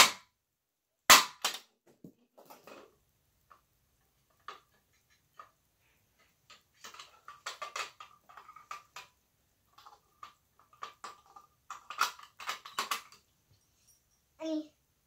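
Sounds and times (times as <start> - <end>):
plastic and metal parts clicking: 6.2 - 13.3.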